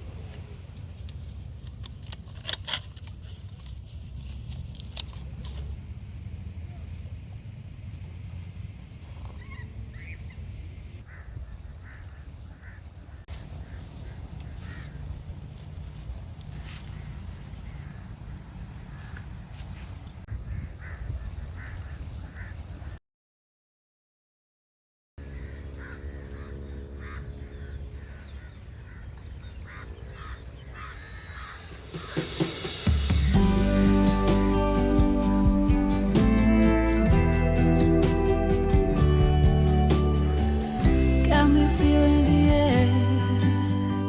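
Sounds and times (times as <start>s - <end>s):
birds calling: 9.4s - 15.3s, 25.2s - 44.0s
bird honking calls: 25.2s - 34.2s
steady low rumble: 31.4s - 44.0s
steady low hum: 31.8s - 44.0s.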